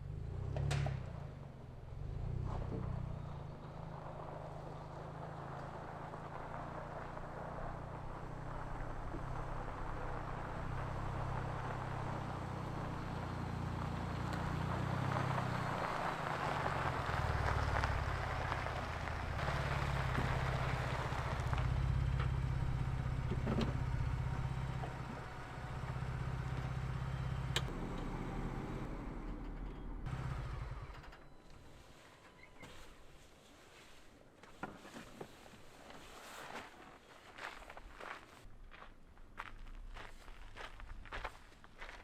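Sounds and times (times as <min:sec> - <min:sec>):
car engine running low: 0:00.0 - 0:31.7.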